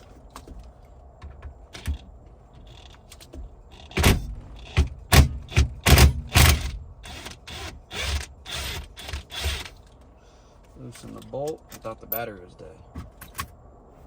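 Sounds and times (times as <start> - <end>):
impact wrench bursts: 3.9 - 9.8.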